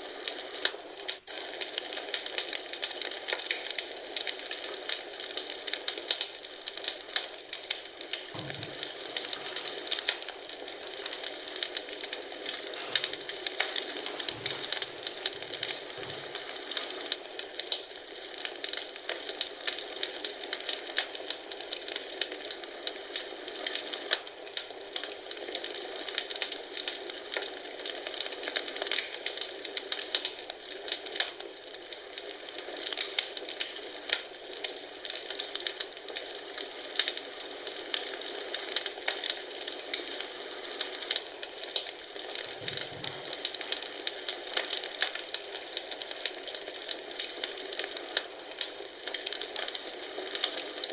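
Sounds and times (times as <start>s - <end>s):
wood fire crackling: 0.0s - 50.9s
soft hiss: 7.8s - 17.1s.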